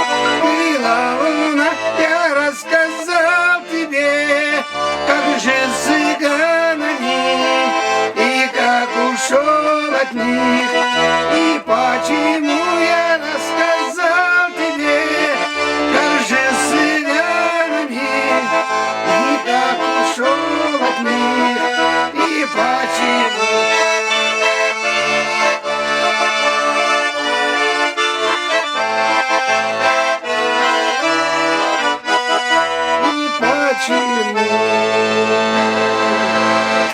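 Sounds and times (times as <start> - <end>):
button accordion playing lively melody: 0.0 - 36.9.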